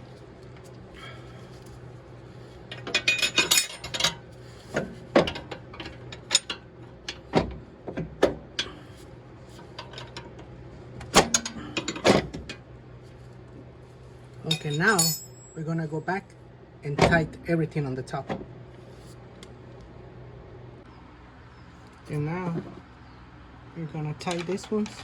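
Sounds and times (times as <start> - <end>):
faint steady hum: 0.0 - 25.0
metal tools clinking: 2.7 - 4.2, 14.4 - 15.6.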